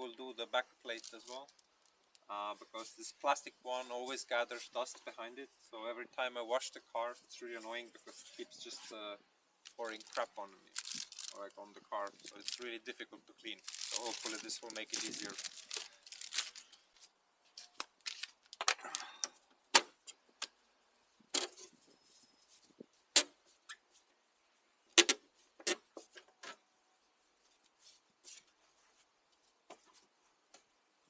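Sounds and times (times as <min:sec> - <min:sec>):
short rustle: 0:13.6 - 0:18.4.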